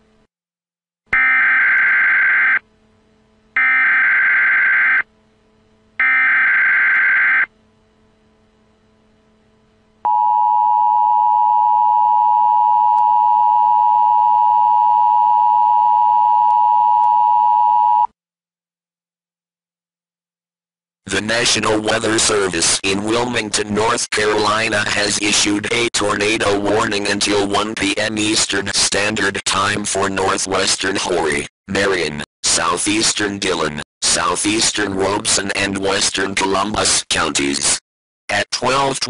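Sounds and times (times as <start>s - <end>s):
long steady attention tone: 1.1s - 18.2s.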